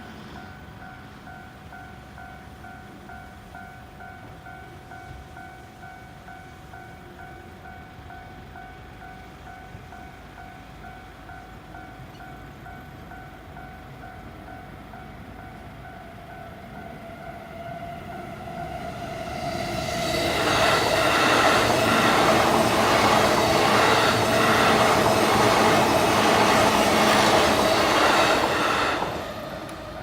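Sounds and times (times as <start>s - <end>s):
low rumble of train: 0.0s - 30.0s
level-crossing alarm ringing: 12.7s - 29.6s.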